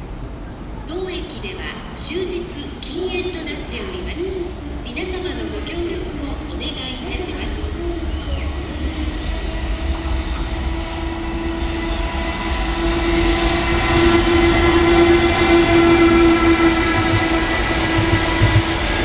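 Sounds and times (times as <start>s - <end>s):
electric locomotive whine: 0.0s - 19.0s
train rumble: 0.0s - 19.0s.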